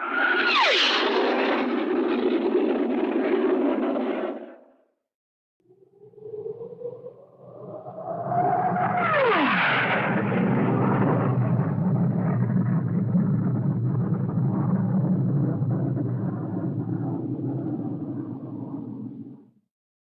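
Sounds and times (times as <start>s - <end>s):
whine dropping in pitch: 0.0s - 2.3s.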